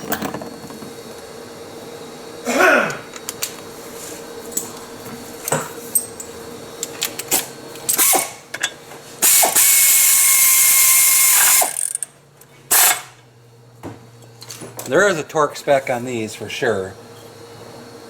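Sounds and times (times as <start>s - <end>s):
cordless power tool running: 9.2s - 12.0s.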